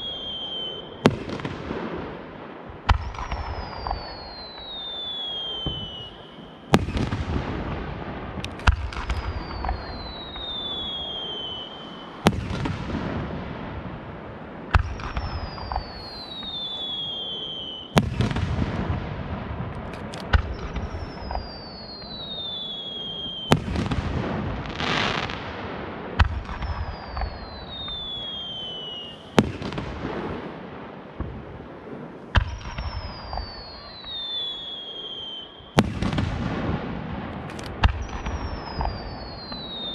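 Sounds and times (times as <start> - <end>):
firework whistle falling in pitch: 0.0 - 1.1, 3.0 - 7.0, 9.0 - 12.3, 15.0 - 18.1, 20.4 - 24.0, 26.4 - 29.2, 32.4 - 35.8, 37.9 - 39.9.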